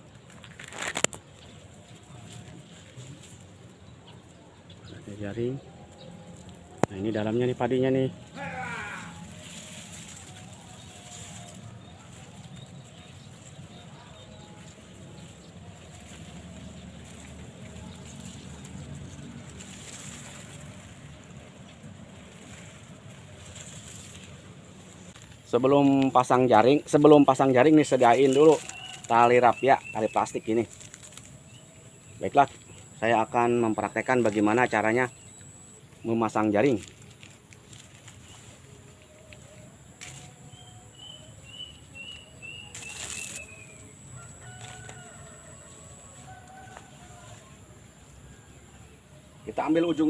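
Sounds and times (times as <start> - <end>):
rustling: 0.1 - 4.4, 5.0 - 48.4
bird calling high notes: 7.8 - 11.5.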